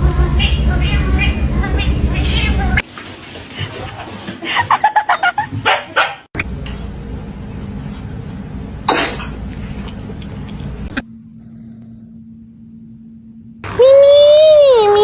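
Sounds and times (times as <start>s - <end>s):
steady low hum: 0.0s - 3.0s, 6.4s - 15.0s
dog barking: 5.6s - 6.3s.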